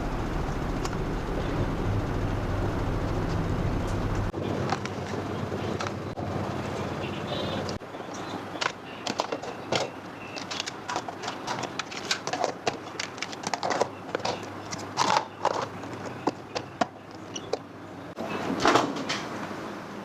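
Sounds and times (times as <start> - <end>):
things being handled: 8.5 - 17.7.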